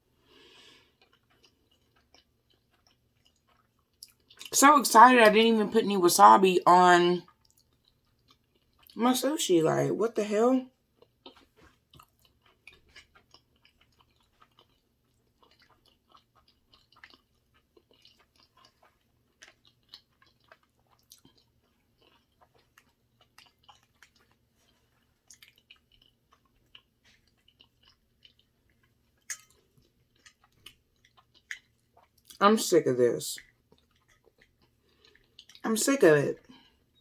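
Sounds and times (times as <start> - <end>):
close-miked chewing: 0.2 - 4.6, 6.2 - 9.0, 10.7 - 32.4, 33.4 - 37.0
wet mouth clicks and smacks: 29.2 - 29.6, 30.2 - 32.4.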